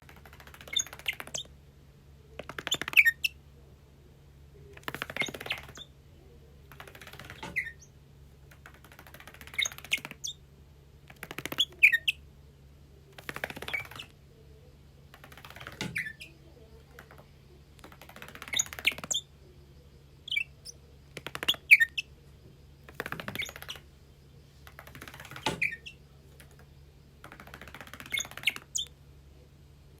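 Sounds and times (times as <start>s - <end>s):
parrot chirping and twittering: 0.4s - 1.5s, 2.4s - 3.4s, 5.0s - 5.9s, 6.9s - 7.9s, 9.1s - 10.4s, 11.2s - 12.2s, 13.3s - 14.1s, 15.2s - 16.4s, 18.2s - 19.3s, 20.2s - 22.1s, 23.0s - 23.8s, 24.7s - 26.0s, 27.3s - 28.9s.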